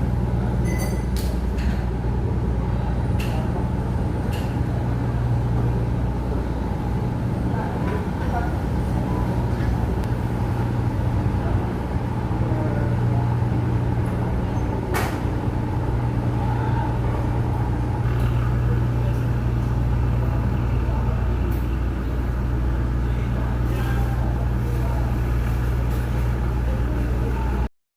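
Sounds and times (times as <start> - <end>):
ship engine droning: 0.0 - 27.7.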